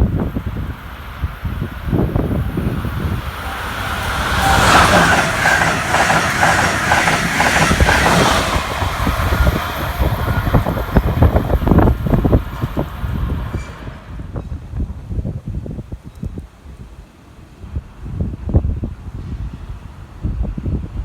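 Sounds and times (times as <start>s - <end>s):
train passing at speed: 0.0s - 15.4s
wheels clacking over rail joints: 2.1s - 14.6s.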